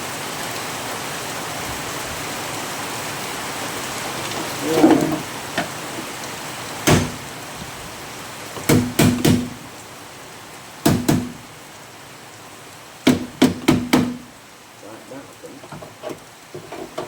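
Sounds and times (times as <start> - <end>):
steady rain hiss: 0.0 - 17.0
hammer blows on steel panel: 6.9 - 7.2, 8.6 - 9.6, 10.9 - 11.4, 13.1 - 14.3.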